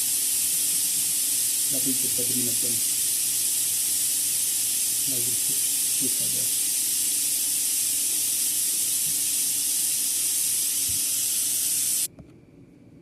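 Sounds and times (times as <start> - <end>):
high-pressure air hissing: 0.0 - 12.1.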